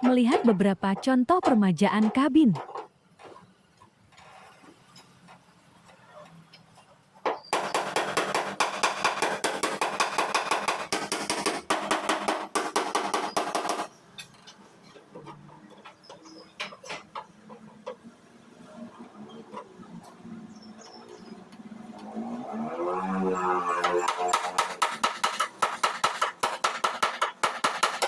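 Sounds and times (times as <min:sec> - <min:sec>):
hammer striking sheet steel: 0:07.6 - 0:13.9, 0:23.8 - 0:28.0.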